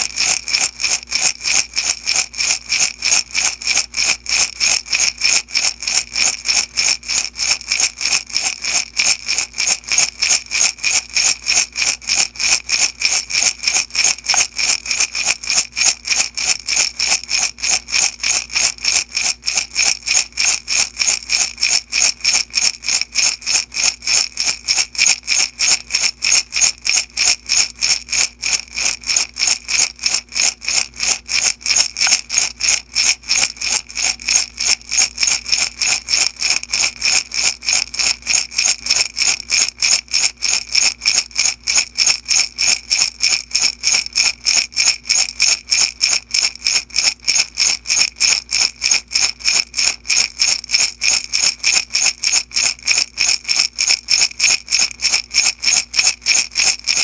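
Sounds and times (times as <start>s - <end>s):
beads rattling in glass jar: 0.0s - 57.0s.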